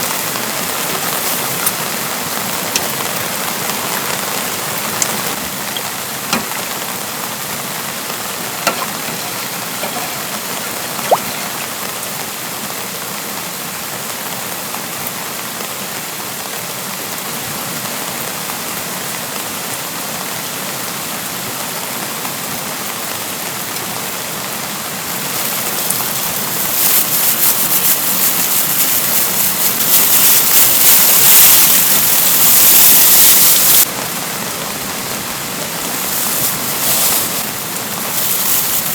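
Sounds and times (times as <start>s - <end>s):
stream rushing: 0.0s - 13.8s, 23.2s - 38.9s
dense raindrop patter on surface: 0.0s - 18.4s, 21.4s - 38.9s
steady rain: 0.0s - 38.9s
single water drips: 10.9s - 11.7s.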